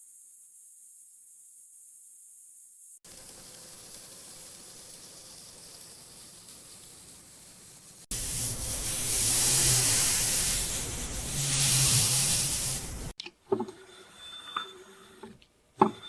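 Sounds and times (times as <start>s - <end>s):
loud spraying hiss: 2.8s - 13.2s.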